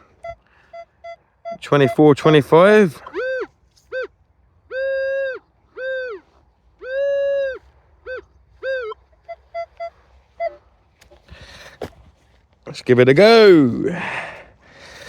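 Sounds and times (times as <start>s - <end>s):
metal detector tone: 0.1s - 2.4s, 3.0s - 4.1s, 6.8s - 10.6s.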